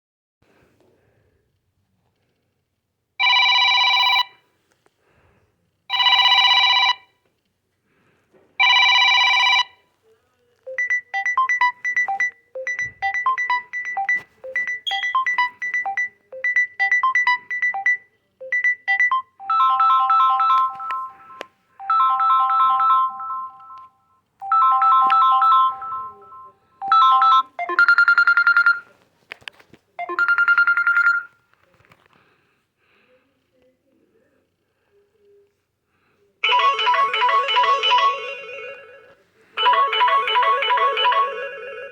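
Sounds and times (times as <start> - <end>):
phone ringtone chimes: 5.9 - 7.0, 8.6 - 9.7, 10.7 - 28.8, 30.0 - 31.3, 36.4 - 41.9.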